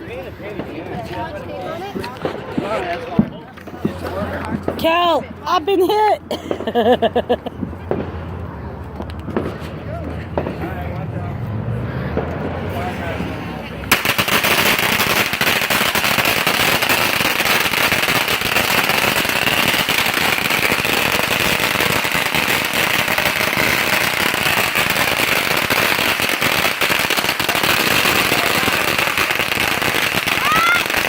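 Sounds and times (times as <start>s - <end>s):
firecrackers rapid popping: 9.0s - 11.0s, 13.8s - 31.0s.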